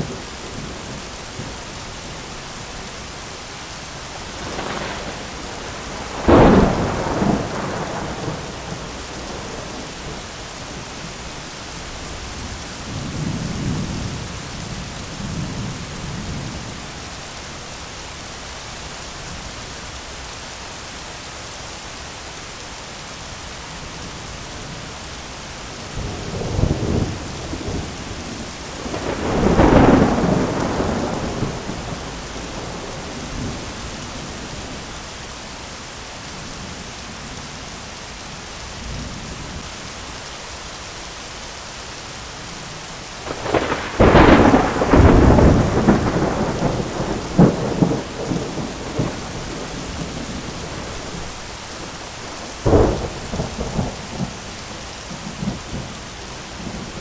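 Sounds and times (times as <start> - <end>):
steady rain hiss: 0.0 - 57.0
rolling thunder: 4.2 - 11.2, 25.9 - 34.9, 43.2 - 56.0.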